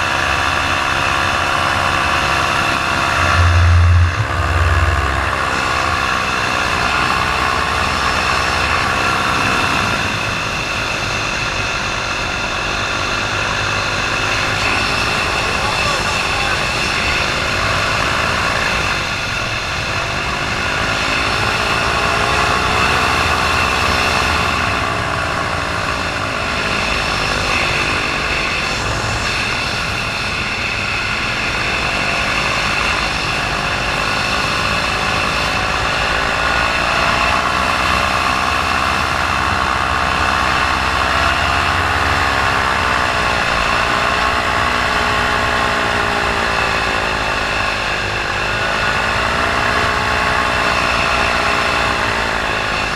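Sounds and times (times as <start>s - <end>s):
paramotor engine and propeller: 0.0s - 52.9s.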